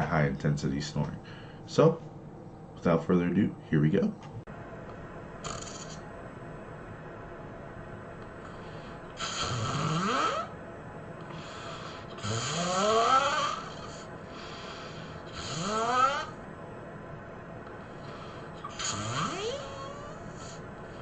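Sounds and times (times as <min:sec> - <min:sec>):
soft breaths: 0:01.2 - 0:01.7, 0:08.3 - 0:09.5, 0:11.2 - 0:12.4, 0:13.3 - 0:15.7, 0:17.7 - 0:21.0
person snoring heavily: 0:05.4 - 0:06.0, 0:08.6 - 0:10.5, 0:11.3 - 0:16.4, 0:18.0 - 0:21.0.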